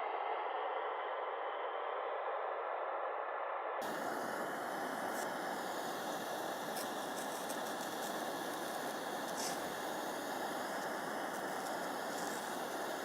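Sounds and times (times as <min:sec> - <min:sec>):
campfire hissing: 0:03.8 - 0:13.0
fire crackling pops: 0:03.8 - 0:13.0.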